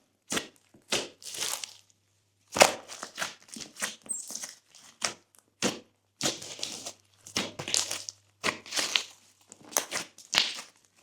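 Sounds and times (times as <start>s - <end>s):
slime squeezed with sticky pops: 9.7s - 10.8s.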